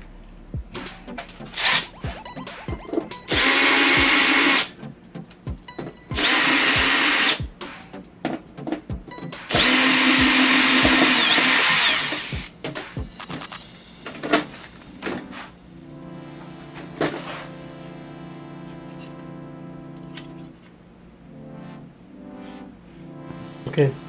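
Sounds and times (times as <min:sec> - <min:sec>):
power screwdriver running: 0:01.6 - 0:01.8, 0:03.3 - 0:04.7, 0:06.2 - 0:07.4, 0:09.5 - 0:12.5.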